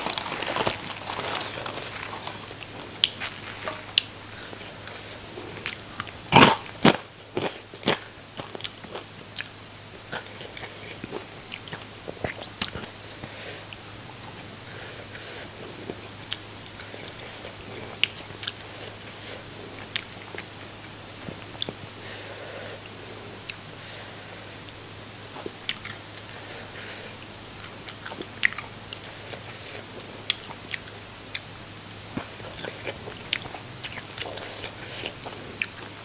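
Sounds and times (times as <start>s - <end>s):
crunching fried fish: 0.0s - 13.8s.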